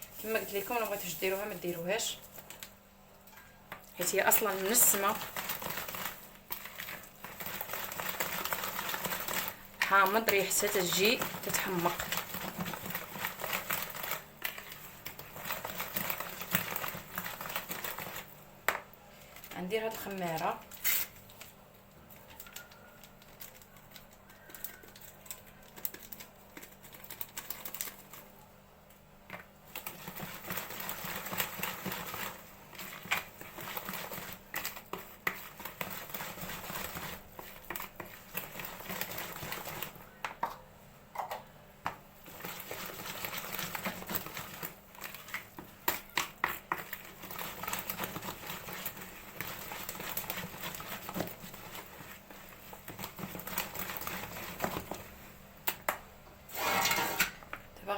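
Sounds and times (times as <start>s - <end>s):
utensil scraping against a bowl: 29.8s - 39.9s, 42.2s - 55.1s, 56.5s - 57.5s.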